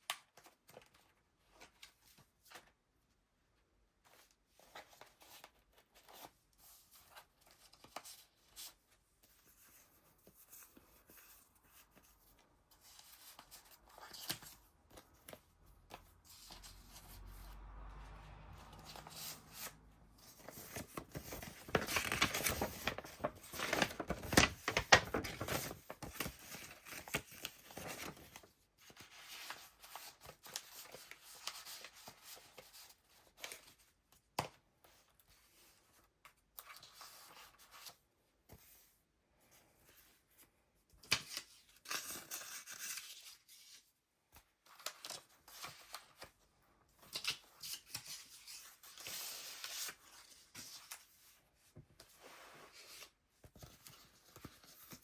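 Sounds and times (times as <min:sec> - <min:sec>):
paper pages rustling and crinkling: 0:00.1 - 0:02.8, 0:04.0 - 0:17.7, 0:18.6 - 0:39.0, 0:39.7 - 0:55.0.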